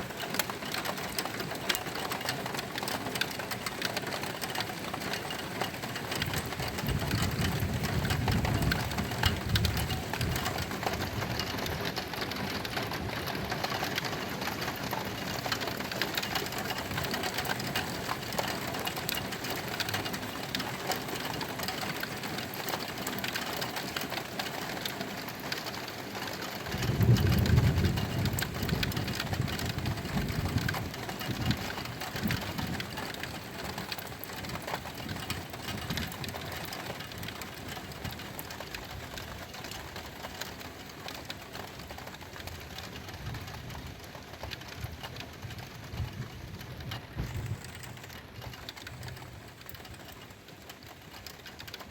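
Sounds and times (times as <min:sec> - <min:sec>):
rain pattering: 0:00.0 - 0:51.9
thunder rolling: 0:26.7 - 0:32.8.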